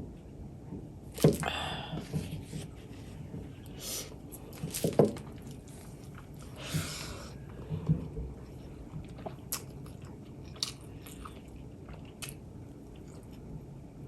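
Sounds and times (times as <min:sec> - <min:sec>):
wet chewing: 0:07.4 - 0:13.5.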